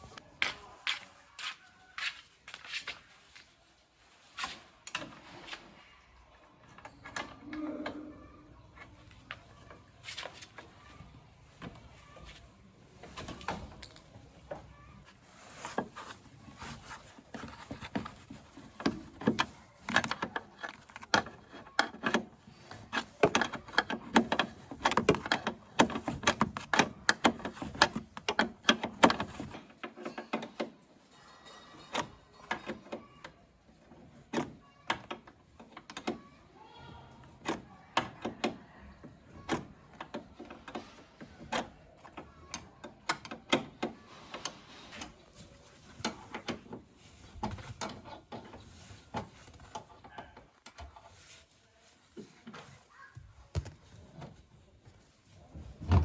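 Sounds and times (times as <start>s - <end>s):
clicks and knocks on metal parts: 17.3s - 36.3s.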